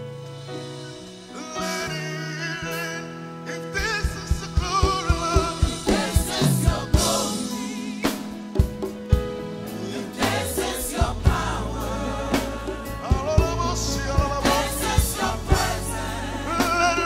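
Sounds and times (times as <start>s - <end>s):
steady drum beat: 3.9s - 17.0s
voices singing with vibrato: 4.8s - 8.6s, 9.7s - 17.0s.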